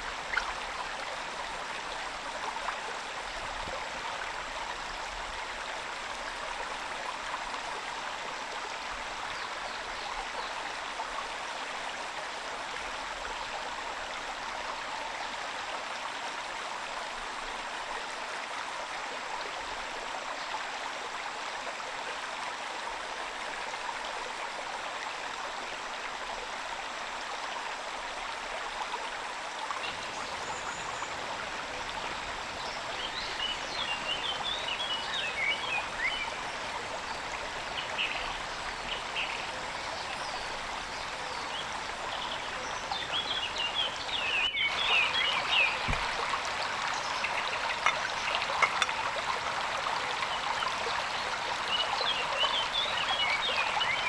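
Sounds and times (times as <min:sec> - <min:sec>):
short chirping calls: 0:29.9 - 0:45.8
steady rain falling: 0:29.9 - 0:53.9.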